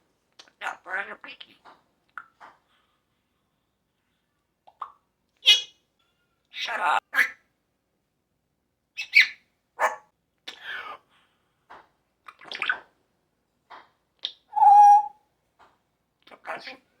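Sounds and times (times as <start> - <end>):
parrot squawking and chattering: 0.4 - 2.3, 5.4 - 5.8, 6.5 - 7.5, 9.0 - 11.1, 12.2 - 12.9, 16.2 - 16.9
parrot pitched call: 9.0 - 11.0, 14.5 - 15.2.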